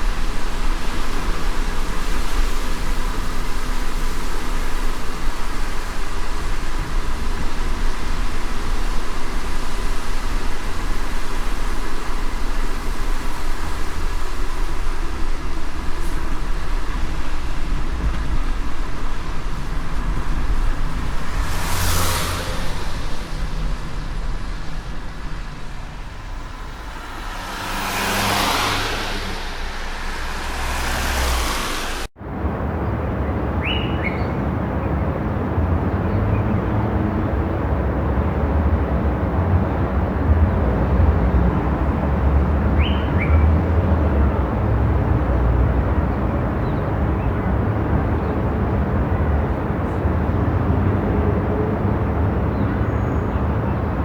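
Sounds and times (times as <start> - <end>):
tyre and wind hiss: 0.0 - 32.6
car road noise rumble: 0.0 - 54.0.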